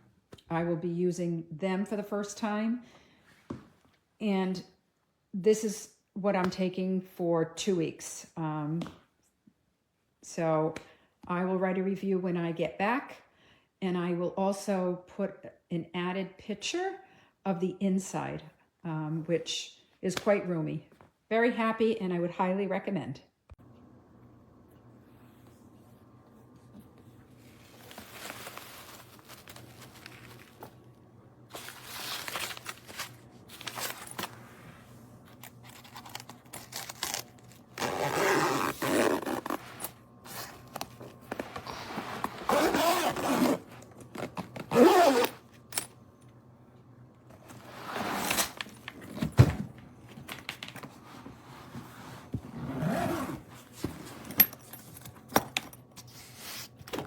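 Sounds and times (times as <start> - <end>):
luggage scraping and jangling: 32.9 - 34.4, 41.6 - 45.9, 52.6 - 55.6.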